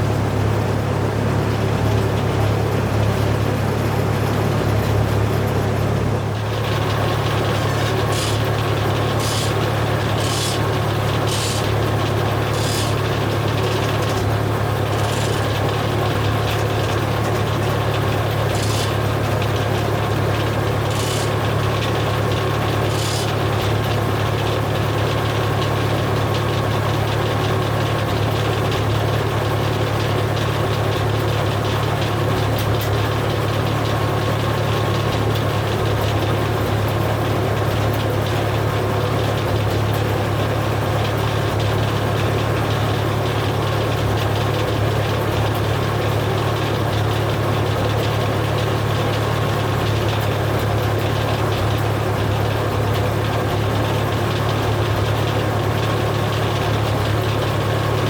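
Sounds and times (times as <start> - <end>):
engine running steadily: 0.0 - 58.0.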